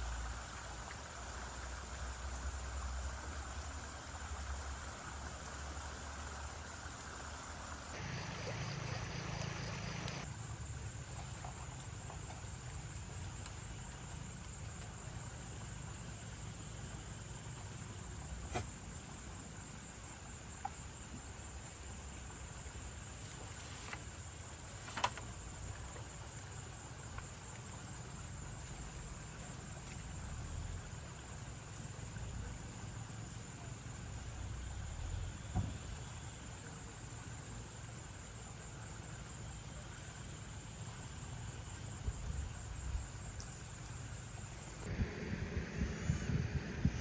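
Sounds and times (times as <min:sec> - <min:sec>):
insects trilling: 0:00.0 - 0:44.9
low rumble: 0:44.8 - 0:47.0.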